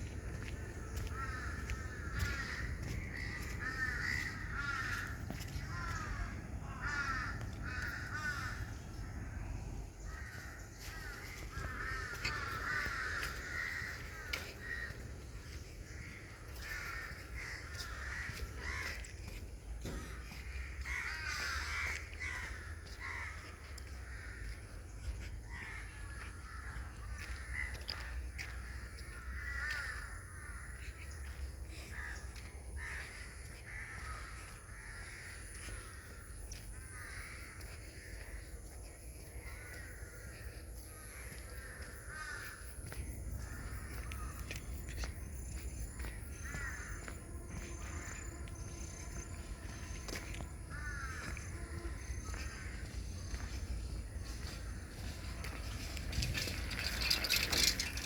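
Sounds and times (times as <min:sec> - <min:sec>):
steady low rumble: 0:00.0 - 0:20.9
crows cawing: 0:00.0 - 0:58.0.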